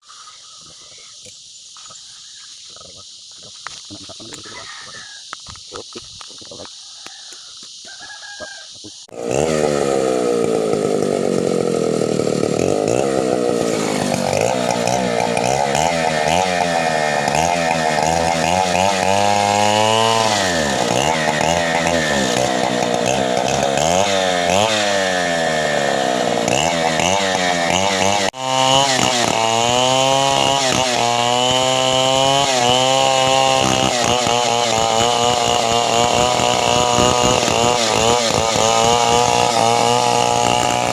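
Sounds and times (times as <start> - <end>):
chainsaw engine revving: 9.1 - 40.9.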